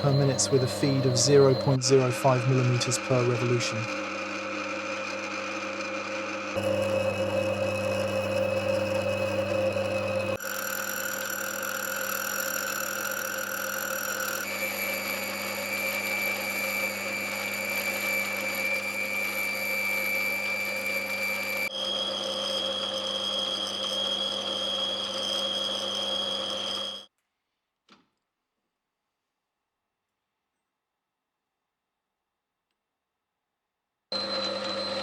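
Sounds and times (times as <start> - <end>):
lathe motor hum with high whine: 0.0 - 27.0, 34.1 - 35.0.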